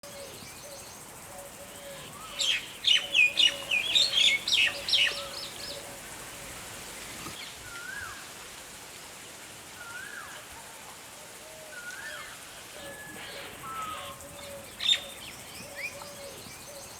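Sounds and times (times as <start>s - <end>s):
faint whistled bird calls: 7.6s - 8.2s.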